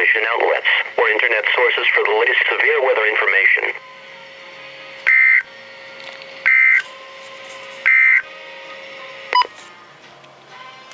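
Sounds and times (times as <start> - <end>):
data warble bursts: 5.1 - 5.4, 6.5 - 6.8, 7.9 - 8.2.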